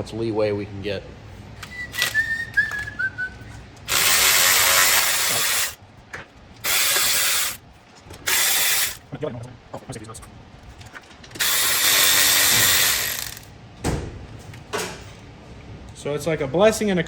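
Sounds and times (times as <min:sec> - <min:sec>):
ratchet running: 0:01.9 - 0:02.2, 0:03.9 - 0:05.8, 0:06.6 - 0:07.6, 0:08.2 - 0:09.0, 0:11.3 - 0:13.5.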